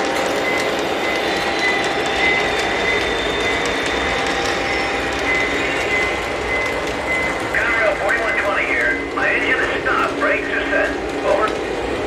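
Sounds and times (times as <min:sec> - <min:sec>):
thin high whine: 0:00.0 - 0:07.7
model train rolling: 0:00.0 - 0:12.0.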